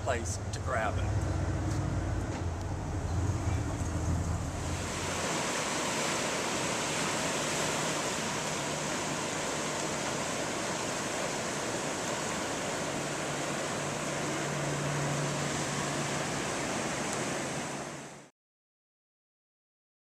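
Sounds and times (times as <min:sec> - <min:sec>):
steady rushing noise: 0:00.0 - 0:18.3.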